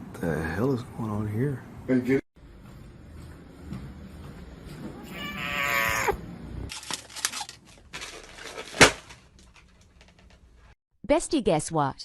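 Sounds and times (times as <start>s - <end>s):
animal crying: 5.0s - 6.2s.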